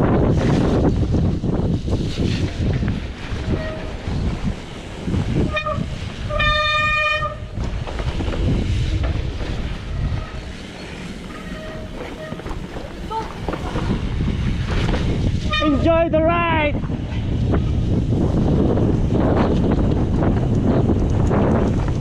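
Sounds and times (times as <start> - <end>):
mountain bike riding on trail: 0.0 - 15.7, 16.3 - 22.0
wind buffeting microphone: 0.0 - 22.0
disc brakes squealing: 9.9 - 14.0.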